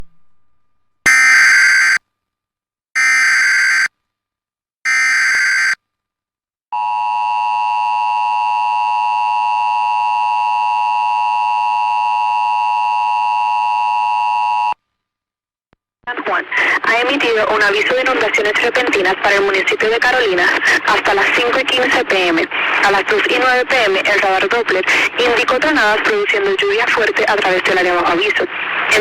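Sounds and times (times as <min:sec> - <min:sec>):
loud attention tone: 0:01.1 - 0:02.0, 0:04.9 - 0:05.8.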